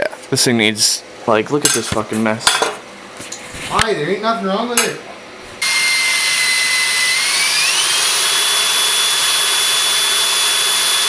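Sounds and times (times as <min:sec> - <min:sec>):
electric power tool whining: 0:05.6 - 0:11.0.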